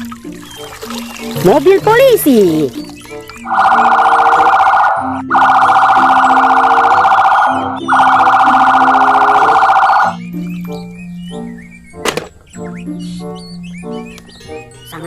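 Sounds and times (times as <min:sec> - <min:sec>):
light background music: 0:00.0 - 0:15.0
police siren warbling: 0:03.4 - 0:10.3.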